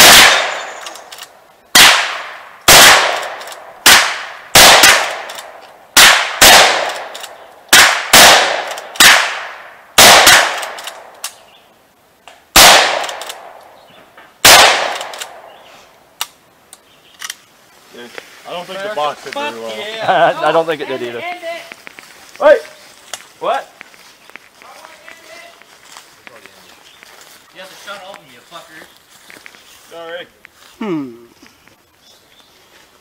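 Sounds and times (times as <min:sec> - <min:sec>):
gunshots with echo: 0:00.0 - 0:00.8, 0:01.8 - 0:05.4, 0:06.0 - 0:10.8, 0:12.6 - 0:13.5, 0:14.4 - 0:15.4.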